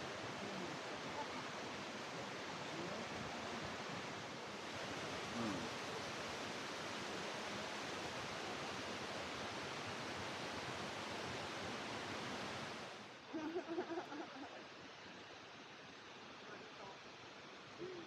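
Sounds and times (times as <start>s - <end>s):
waterfall roar: 0.0s - 13.2s.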